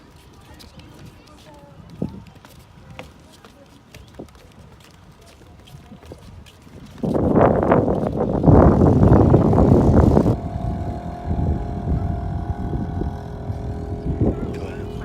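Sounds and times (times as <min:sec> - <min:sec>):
boat engine hum: 0:07.7 - 0:15.0
loud rushing noise: 0:08.5 - 0:15.0.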